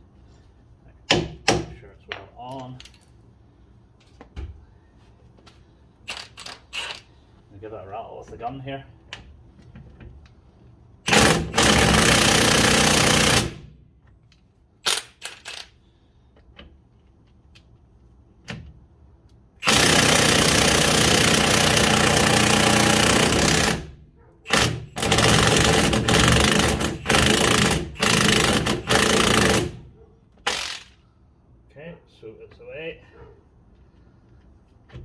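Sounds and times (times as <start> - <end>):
impact wrench hammering: 1.1 - 1.8.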